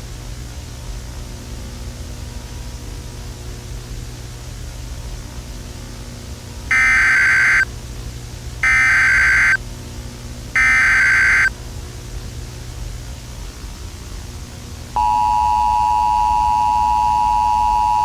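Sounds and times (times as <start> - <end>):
digital data bursts: 6.7 - 7.6, 8.6 - 9.6, 10.6 - 11.5
steady background hiss: 10.6 - 11.5.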